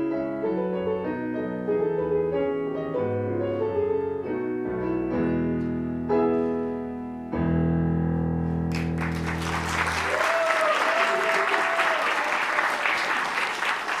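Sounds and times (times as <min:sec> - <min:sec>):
piano chords: 0:00.0 - 0:10.1
audience applause: 0:08.7 - 0:14.0.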